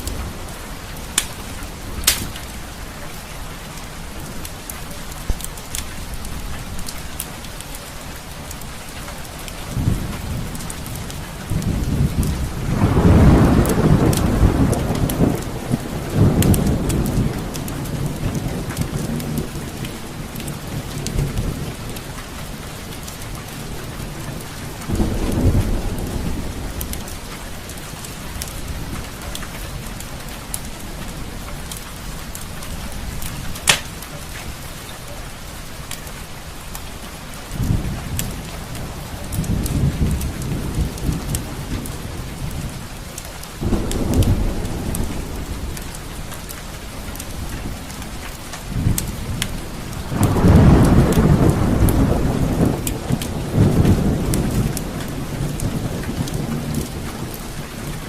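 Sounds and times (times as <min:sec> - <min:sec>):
heavy rain: 0:00.0 - 0:58.0
sharp crackling pops: 0:01.1 - 0:02.6, 0:33.6 - 0:34.2
rolling thunder: 0:09.6 - 0:22.0, 0:37.5 - 0:43.0, 0:43.6 - 0:48.0, 0:48.6 - 0:58.0.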